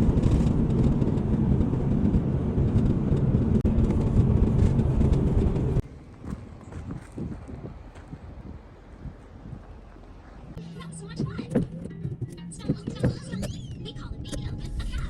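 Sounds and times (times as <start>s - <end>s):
vehicle road and engine rumble: 0.0s - 15.0s.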